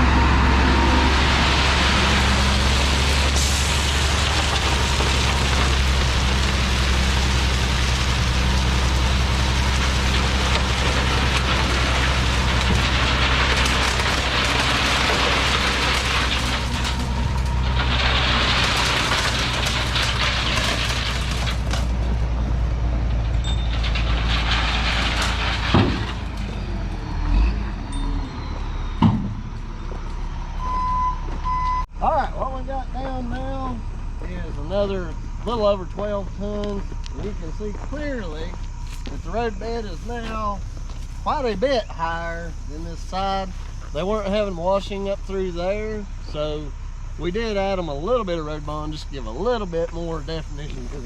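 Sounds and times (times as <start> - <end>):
truck engine running: 0.0 - 51.0
gravel rushing out of truck bed: 0.4 - 22.2, 23.5 - 27.3, 34.2 - 46.7.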